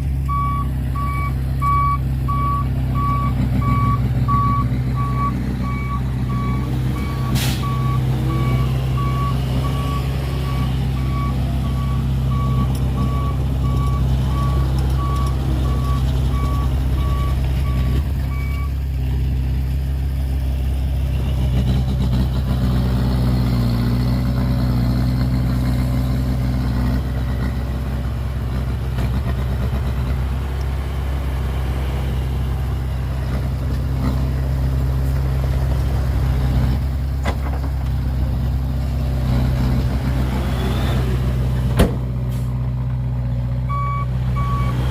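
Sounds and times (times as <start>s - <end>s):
heavy diesel machinery running: 0.0s - 44.9s
reversing alarm beeping: 0.3s - 18.8s, 43.7s - 44.8s.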